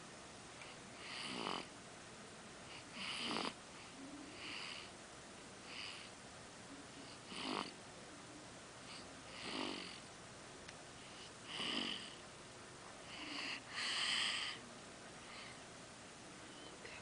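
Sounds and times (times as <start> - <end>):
baby snoring: 1.0 - 1.7, 2.7 - 4.9, 5.7 - 6.1, 7.0 - 7.8, 8.9 - 10.0, 11.0 - 12.2, 13.0 - 14.6.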